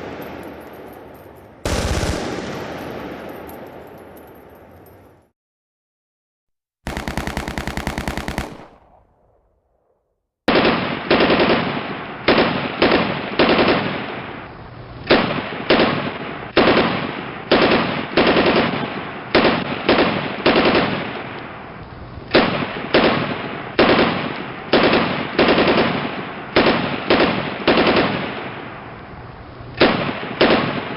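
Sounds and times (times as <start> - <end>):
machine-gun fire: 0.0 - 4.9, 6.9 - 9.6.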